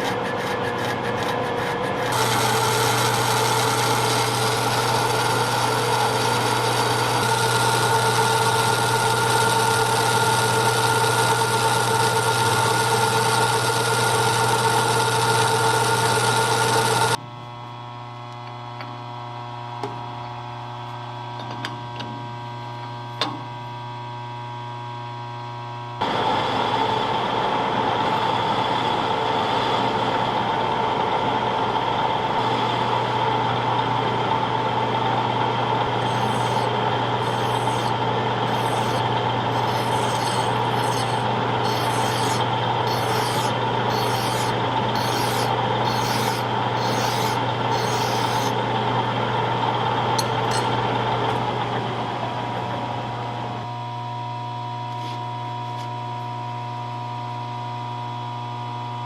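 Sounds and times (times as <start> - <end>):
electric grinder grinding steel: 2.0 - 17.2, 35.8 - 48.8, 50.2 - 50.8.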